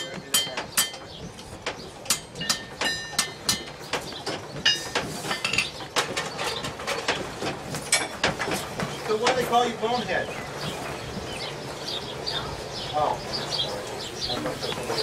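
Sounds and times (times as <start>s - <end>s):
hammer striking iron: 0.0s - 6.1s.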